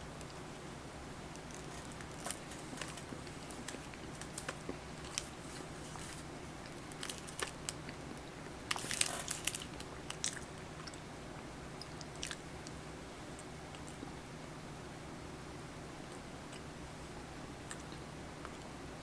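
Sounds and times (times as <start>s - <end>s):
faint low hum: 0.0s - 19.0s
person chewing snack cake: 1.3s - 14.0s.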